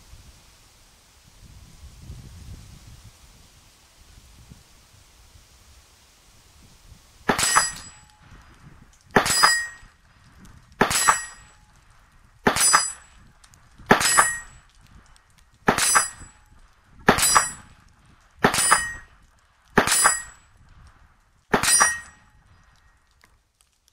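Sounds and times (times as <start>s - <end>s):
rifle shots: 7.3s - 8.0s, 9.1s - 9.8s, 10.8s - 11.5s, 12.4s - 13.1s, 13.9s - 14.6s, 15.7s - 16.4s, 17.1s - 17.8s, 18.4s - 19.1s, 19.8s - 20.4s, 21.5s - 22.2s.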